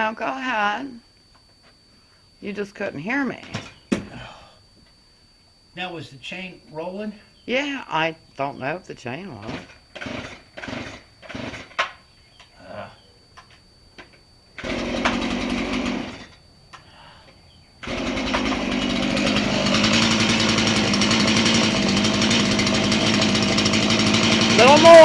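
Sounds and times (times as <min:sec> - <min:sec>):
chainsaw running: 0:09.4 - 0:11.9, 0:14.6 - 0:16.4, 0:17.8 - 0:25.0.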